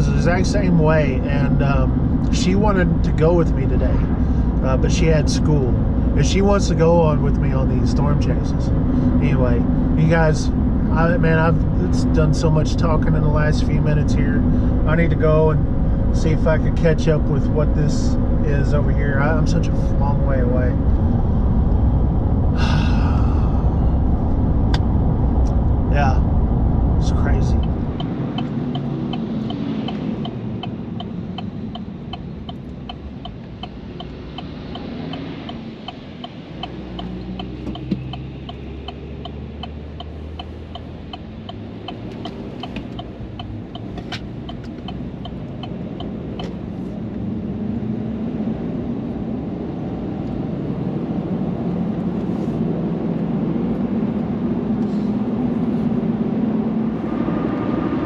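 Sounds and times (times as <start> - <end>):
car road and engine noise: 0.0 - 58.0
fast regular ticking: 27.6 - 46.4.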